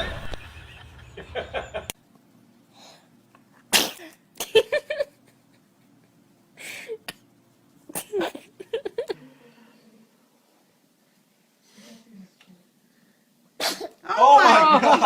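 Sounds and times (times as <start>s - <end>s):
baby sneezing: 3.7s - 4.1s, 13.6s - 14.0s.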